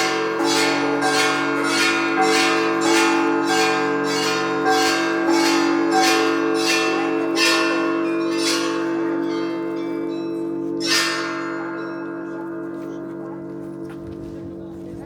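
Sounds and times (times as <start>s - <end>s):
church bell strikes: 0.0s - 15.0s
large bell humming: 0.0s - 15.0s.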